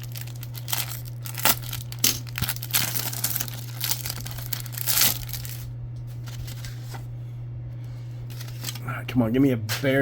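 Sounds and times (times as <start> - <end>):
foil wrapper tearing and crinkling: 0.0 - 6.7.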